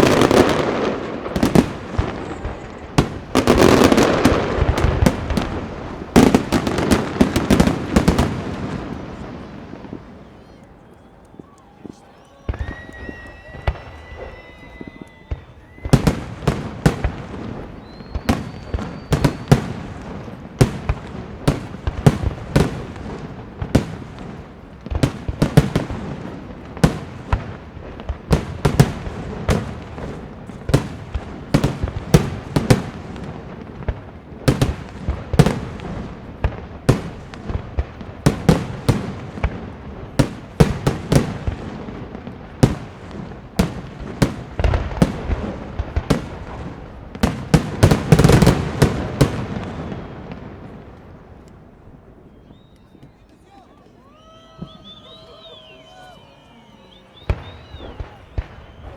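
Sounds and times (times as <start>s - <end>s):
fireworks crackling: 0.0s - 58.9s
firework shells bursting: 56.9s - 58.9s.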